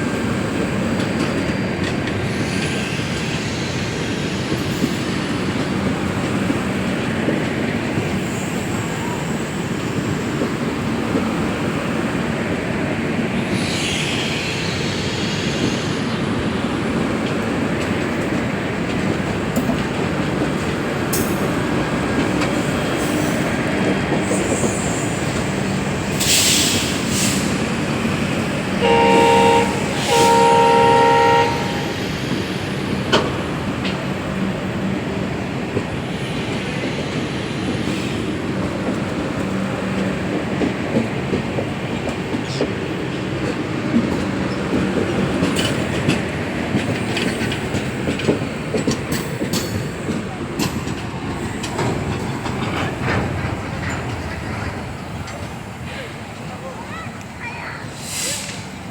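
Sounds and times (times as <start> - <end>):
train wheels rumbling on rails: 0.0 - 58.9
two-tone train horn: 28.8 - 32.0.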